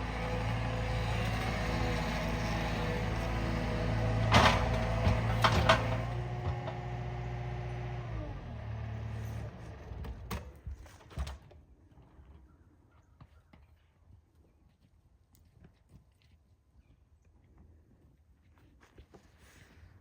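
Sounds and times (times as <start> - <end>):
diesel engine running: 0.0 - 10.3.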